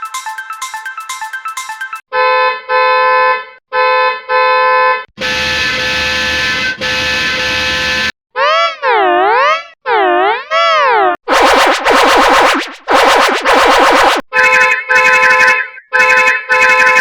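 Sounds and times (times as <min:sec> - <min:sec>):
truck horn honks: 0:02.1 - 0:08.1, 0:14.4 - 0:17.0.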